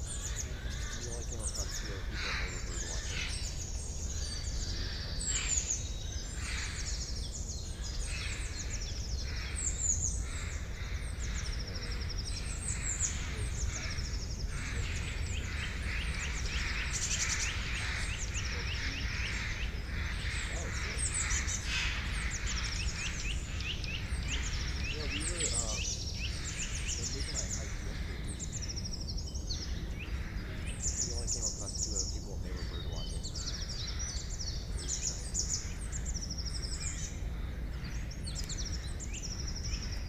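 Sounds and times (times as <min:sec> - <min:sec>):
small birds chirping: 0:00.0 - 0:40.0.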